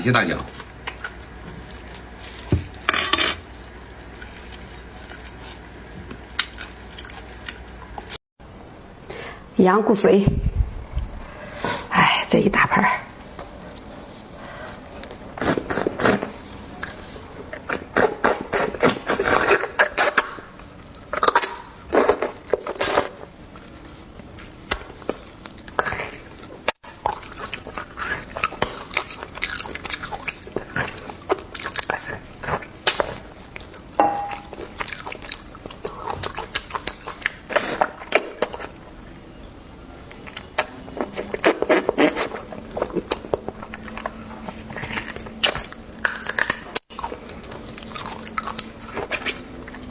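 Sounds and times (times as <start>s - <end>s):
wet chewing and smacking: 0.0s - 8.2s, 17.6s - 38.9s, 40.0s - 49.9s.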